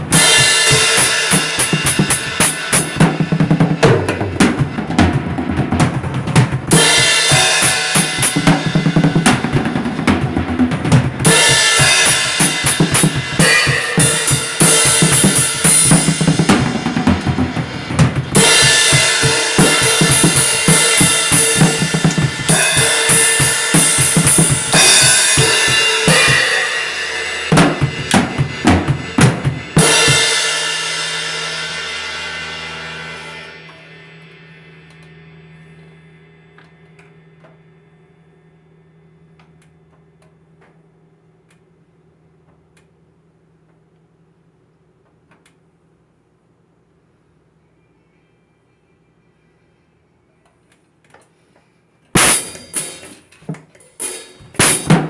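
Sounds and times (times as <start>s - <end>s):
drum kit kick and snare: 0.0s - 31.6s, 52.2s - 55.0s
steady pitched instruments: 0.0s - 39.2s.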